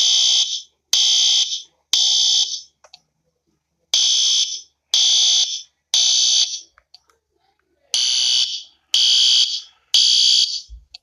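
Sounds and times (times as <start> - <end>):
fire alarm blasts: 8.0 - 10.8.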